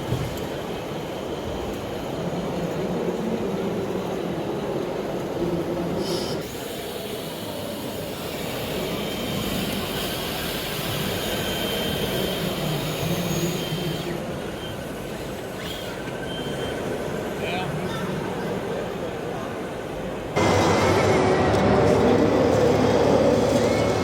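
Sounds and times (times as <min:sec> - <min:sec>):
electric motors and hydraulic pumps: 0:06.0 - 0:17.4, 0:20.4 - 0:24.0.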